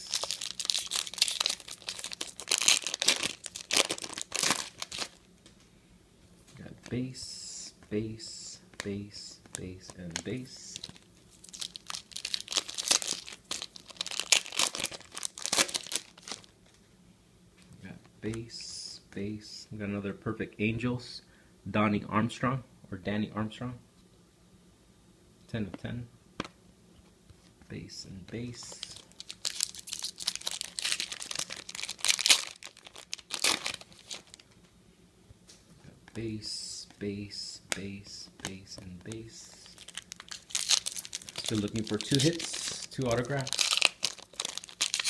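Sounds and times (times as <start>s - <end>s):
wrapper tearing and crinkling: 0.0s - 5.2s, 10.7s - 16.5s, 28.7s - 34.5s, 39.6s - 45.0s.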